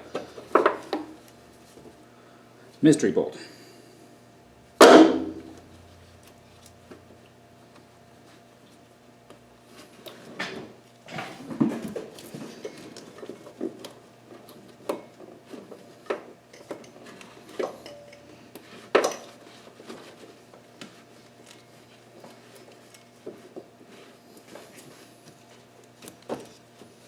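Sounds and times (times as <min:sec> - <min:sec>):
metal tools clinking and clanking: 0:16.5 - 0:18.4.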